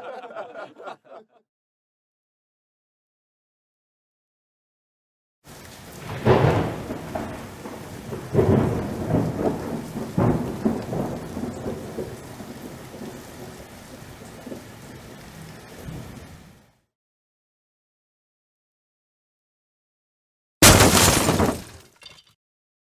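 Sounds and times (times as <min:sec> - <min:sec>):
thunder cracking and rumbling: 0:05.5 - 0:14.8
rain falling: 0:05.5 - 0:16.7.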